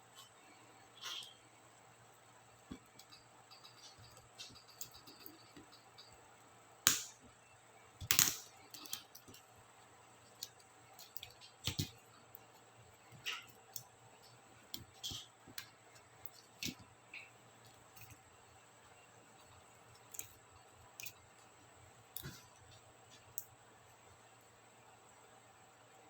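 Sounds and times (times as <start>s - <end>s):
plastic keycap clicks and snaps: 6.9s - 7.1s, 8.0s - 9.0s.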